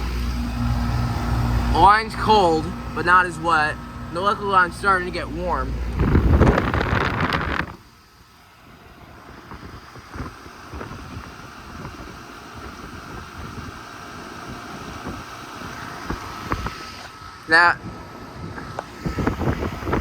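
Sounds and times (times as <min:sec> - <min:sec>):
air conditioner condenser humming: 0:00.0 - 0:20.0
wind buffeting microphone: 0:04.4 - 0:20.0.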